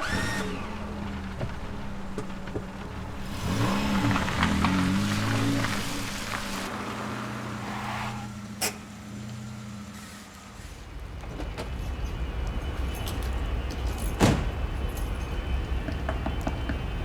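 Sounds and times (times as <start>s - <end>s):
motor vehicle rumble: 0.0s - 17.0s.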